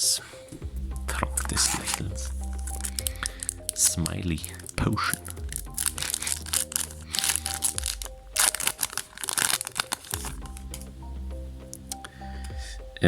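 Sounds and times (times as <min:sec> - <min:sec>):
background music: 0:00.0 - 0:13.0
foil wrapper crinkling and tearing: 0:01.4 - 0:10.8.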